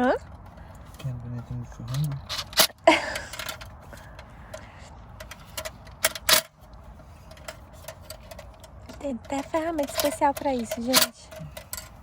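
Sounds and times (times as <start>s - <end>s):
hand tools clicking on plastic: 7.3s - 12.0s.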